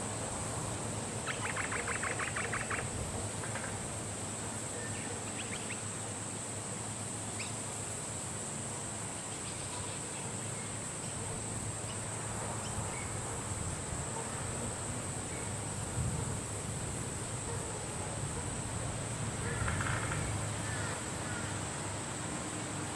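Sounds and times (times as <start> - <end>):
insect drone: 0.0 - 22.9
low wind: 0.0 - 22.9
bird chirps: 1.2 - 2.9
bird trilling: 1.2 - 3.7.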